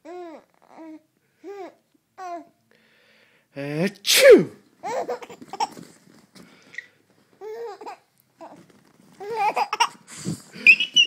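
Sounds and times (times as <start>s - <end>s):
baby laughing and babbling: 0.0s - 2.5s, 4.8s - 5.8s, 7.4s - 8.6s, 9.2s - 11.0s.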